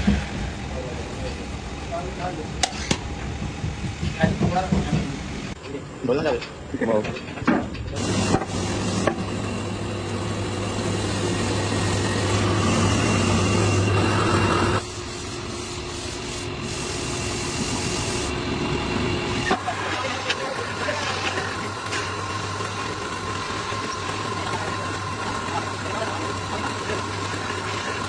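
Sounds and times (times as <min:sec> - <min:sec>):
power sander on wood: 0:08.0 - 0:18.4.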